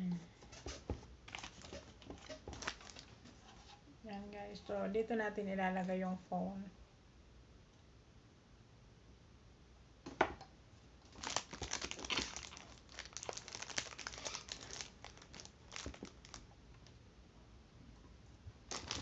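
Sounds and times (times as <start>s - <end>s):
plastic packaging crinkling: 0.5s - 3.2s, 11.1s - 16.9s, 18.7s - 19.0s.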